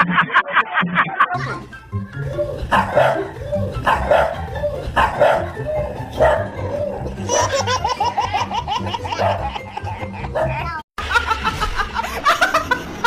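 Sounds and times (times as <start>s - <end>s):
dog barking: 2.7s - 5.6s, 6.2s - 6.6s, 9.2s - 9.5s.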